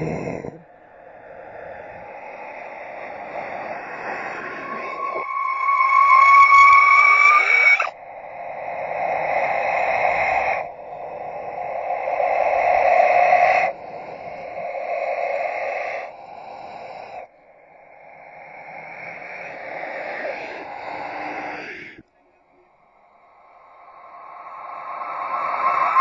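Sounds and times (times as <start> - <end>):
eerie rising tone: 0.0 - 13.8, 23.3 - 26.0
hissing swelling sounds: 0.0 - 21.9, 23.0 - 26.0.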